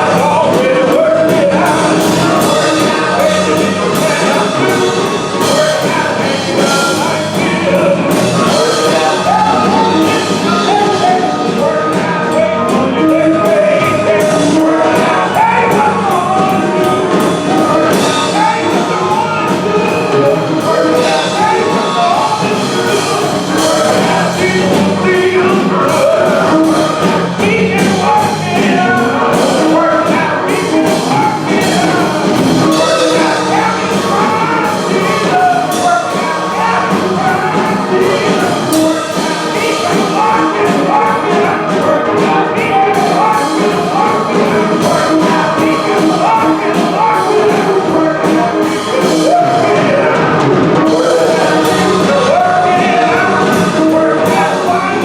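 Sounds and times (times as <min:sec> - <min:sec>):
drums steady beat: 0:00.0 - 0:55.0
voices singing gospel: 0:00.0 - 0:55.0.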